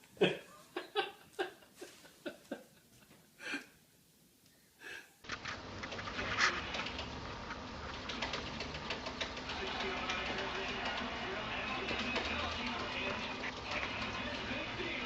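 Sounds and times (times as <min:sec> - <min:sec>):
steady noisy background: 0:05.2 - 0:15.0.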